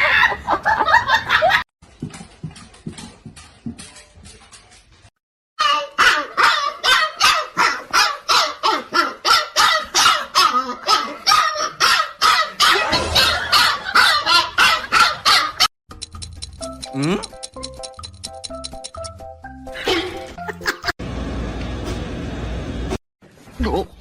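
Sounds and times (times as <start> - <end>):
dog barking rapidly: 5.6 - 15.7.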